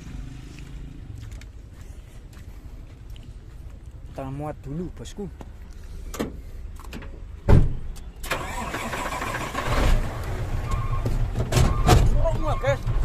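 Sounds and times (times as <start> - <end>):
dump truck diesel engine rumbling: 8.3 - 13.0.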